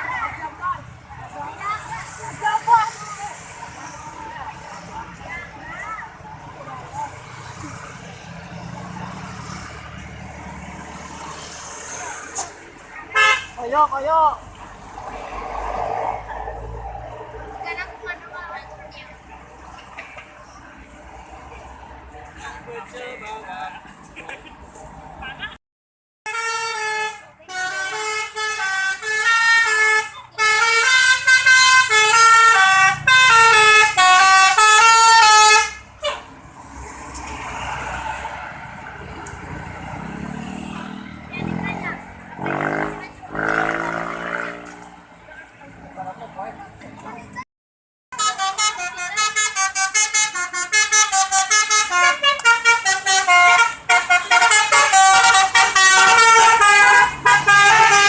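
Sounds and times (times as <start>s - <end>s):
vehicle engine: 0.0s - 25.6s, 26.7s - 47.5s, 48.2s - 58.0s
multi-tone bus horn tune: 13.1s - 13.6s, 26.3s - 36.3s, 48.1s - 58.0s.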